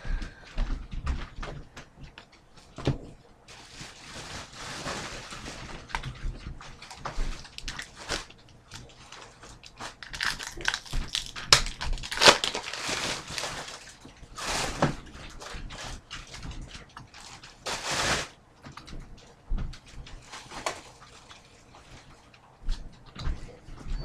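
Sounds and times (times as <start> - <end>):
wrapper crinkling: 3.5 - 6.1, 6.7 - 18.3, 20.2 - 22.0.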